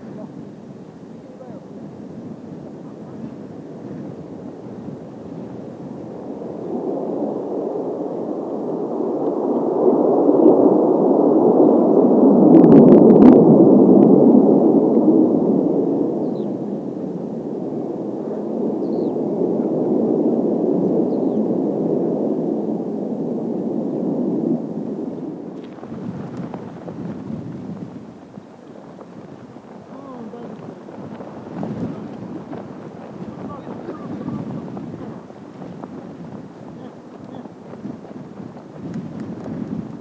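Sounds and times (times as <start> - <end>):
jets passing over: 24.4 - 40.0.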